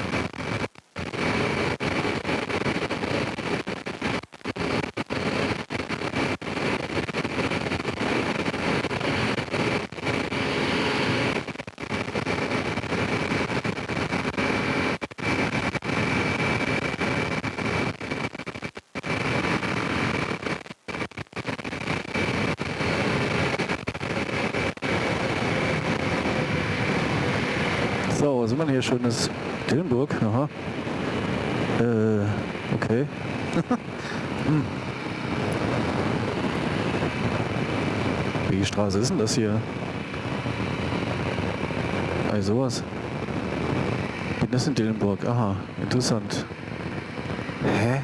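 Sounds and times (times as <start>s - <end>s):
wind noise: 24.1s - 48.0s.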